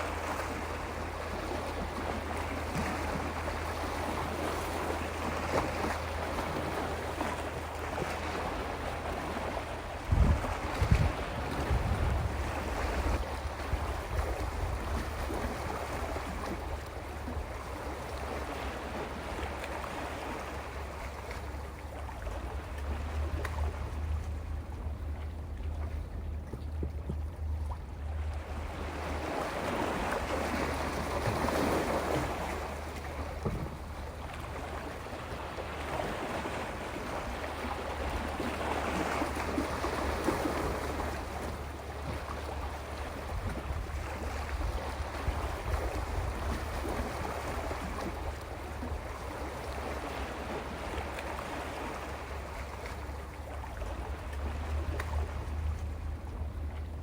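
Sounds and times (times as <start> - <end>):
sea waves on rocky shore: 0.0 - 26.4, 27.8 - 57.0
steady low rumble: 53.1 - 57.0.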